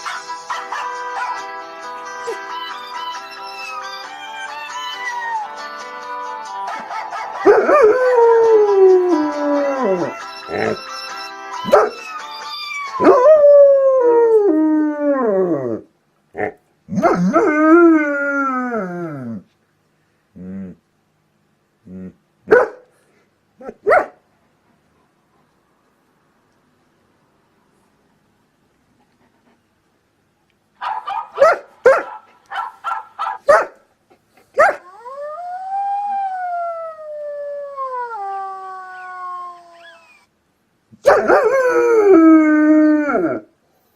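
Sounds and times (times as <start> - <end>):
dog barking and yipping: 0.0 - 1.5, 11.6 - 12.1, 22.5 - 22.9, 23.6 - 24.2, 30.8 - 33.8, 34.6 - 34.9, 41.0 - 41.5
dog howling: 7.4 - 10.8, 34.7 - 40.3.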